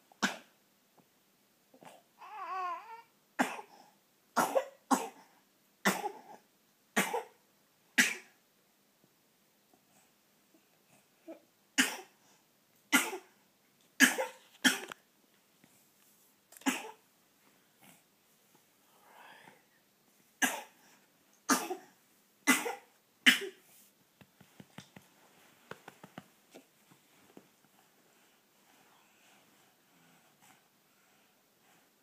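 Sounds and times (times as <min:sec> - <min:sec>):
faint breath: 0:18.8 - 0:19.8.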